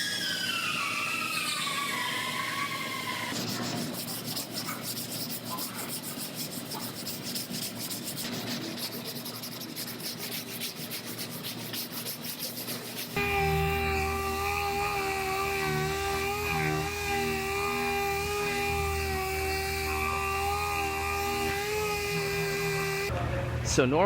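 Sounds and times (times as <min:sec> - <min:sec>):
power tool spinning down: 0:00.0 - 0:03.4, 0:13.2 - 0:23.1
hand sanding car panel: 0:03.3 - 0:23.1.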